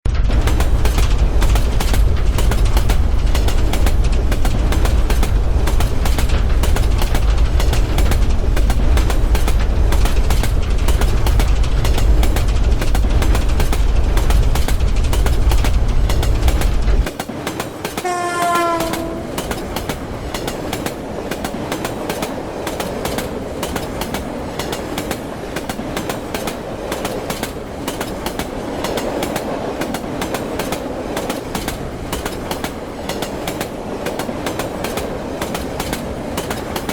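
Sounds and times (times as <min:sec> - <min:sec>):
train rumble: 0:00.0 - 0:36.9
wheels clattering on rail joints: 0:00.1 - 0:36.9
train horn blast: 0:18.0 - 0:19.6.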